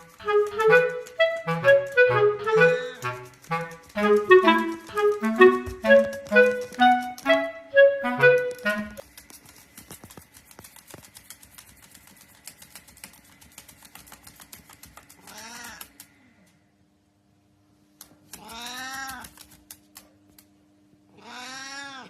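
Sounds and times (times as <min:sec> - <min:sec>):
clarinet-like tune: 0:00.0 - 0:09.0
dog claws scratching while digging: 0:09.0 - 0:16.0, 0:18.2 - 0:20.1.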